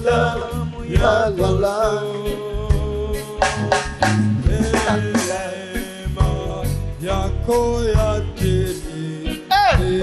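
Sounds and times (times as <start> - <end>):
congregation singing a hymn: 0.0 - 3.6, 4.4 - 10.0
band with drums and bass: 2.4 - 5.6.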